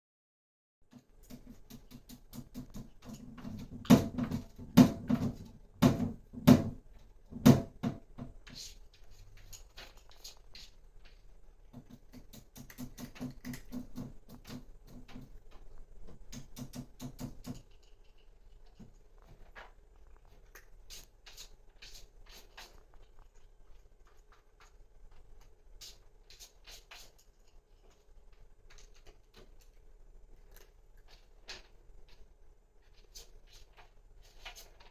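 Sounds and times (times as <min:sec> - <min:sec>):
cat scratching in litter: 0:08.4 - 0:34.9.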